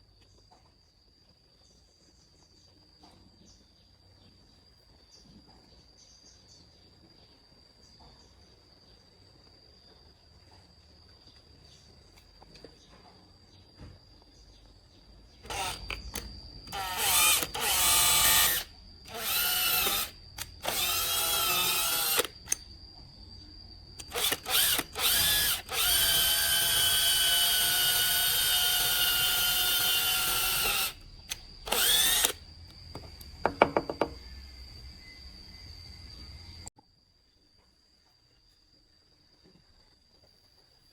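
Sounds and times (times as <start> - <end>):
power tool motor whining: 15.4 - 22.6, 24.0 - 34.1.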